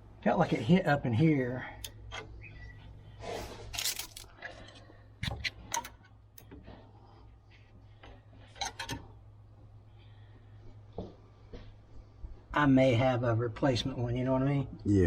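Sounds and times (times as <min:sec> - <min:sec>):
steady low hum: 0:00.0 - 0:15.0
clicks and scrapes of tools: 0:03.6 - 0:06.7.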